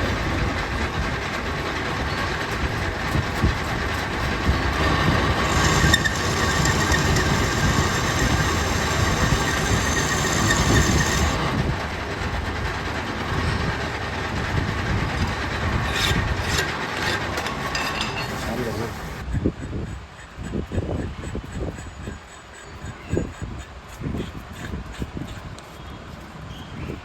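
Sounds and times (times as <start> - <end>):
metal lathe running: 0.0 - 19.3.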